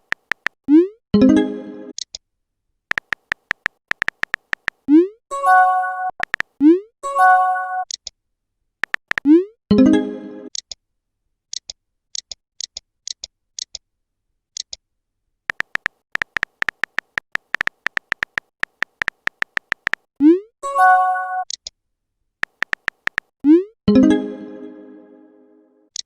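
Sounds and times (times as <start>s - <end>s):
tapping clicks: 0.0s - 0.6s, 2.9s - 4.8s, 6.2s - 6.6s, 8.8s - 9.3s, 15.5s - 20.1s, 22.4s - 23.3s
keyboard taps with beeps: 0.0s - 2.1s, 2.9s - 5.2s, 5.9s - 6.8s, 8.8s - 9.5s, 15.5s - 20.4s, 21.2s - 21.7s, 22.4s - 23.6s.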